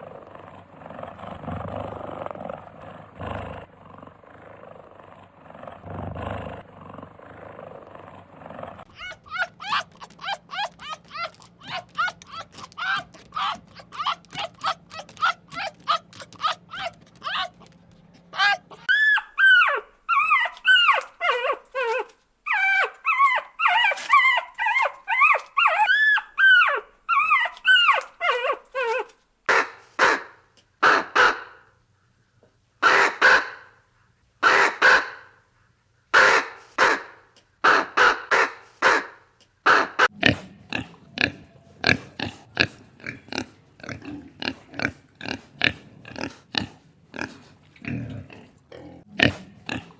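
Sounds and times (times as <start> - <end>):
harsh noisy animal calls: 3.4 - 31.6, 34.4 - 35.2
high whining animal calls: 8.9 - 17.7, 18.3 - 31.4.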